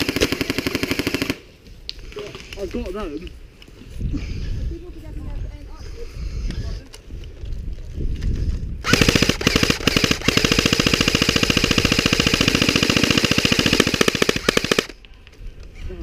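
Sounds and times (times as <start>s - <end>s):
airsoft rifle full-auto burst: 0.0s - 1.4s, 8.8s - 15.0s.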